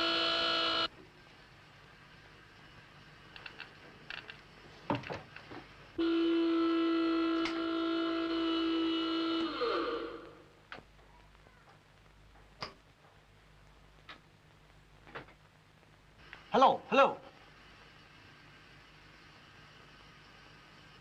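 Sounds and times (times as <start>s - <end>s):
train electrical whine: 0.0s - 10.8s, 16.2s - 21.0s.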